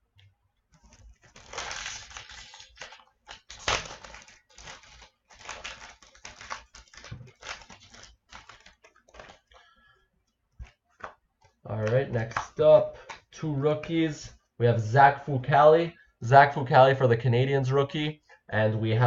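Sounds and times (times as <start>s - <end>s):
wrapper tearing and crinkling: 0.8s - 9.7s.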